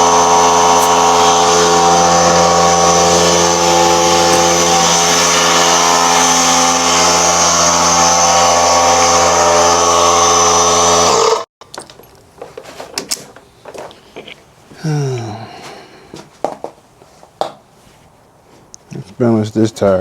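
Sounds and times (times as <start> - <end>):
electric motor running: 0.0 - 11.5.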